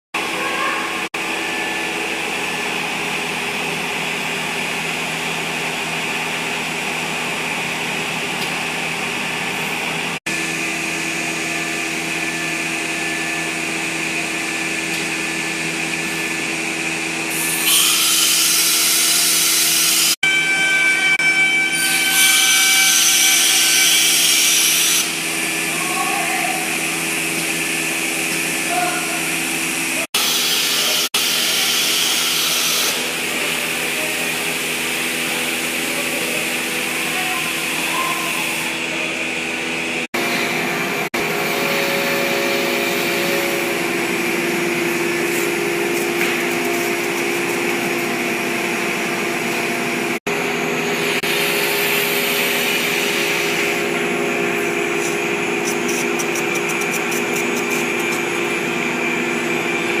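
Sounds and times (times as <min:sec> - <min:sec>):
router machine whirring: 0:10.2 - 0:20.6, 0:30.1 - 0:37.8, 0:38.4 - 1:00.0.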